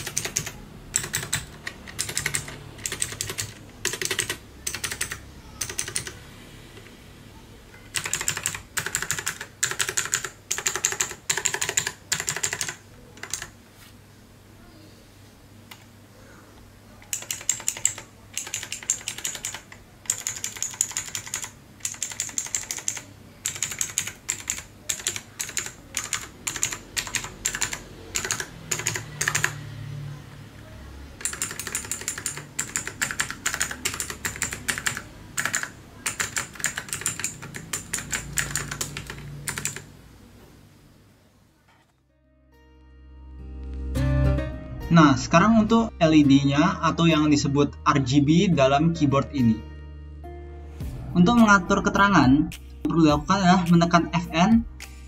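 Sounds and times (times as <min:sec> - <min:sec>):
mechanical keyboard typing: 0:00.0 - 0:06.2, 0:07.8 - 0:13.5, 0:17.0 - 0:29.6, 0:31.2 - 0:39.9.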